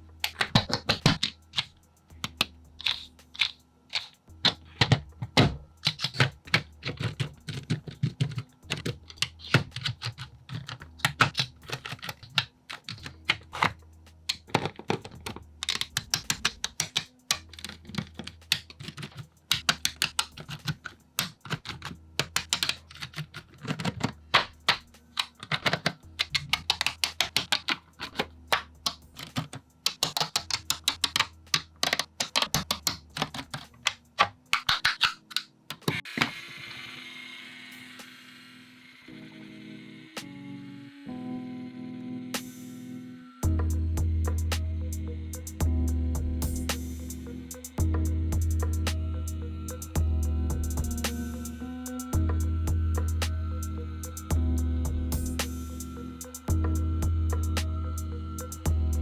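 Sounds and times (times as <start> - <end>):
plastic parts clicking and tapping: 0.2 - 36.4
background hum: 43.1 - 59.0.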